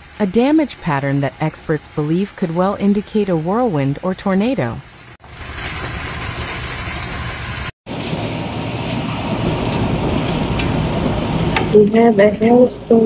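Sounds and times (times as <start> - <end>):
heavy rain pouring: 0.0 - 13.0
low rumble: 7.9 - 13.0.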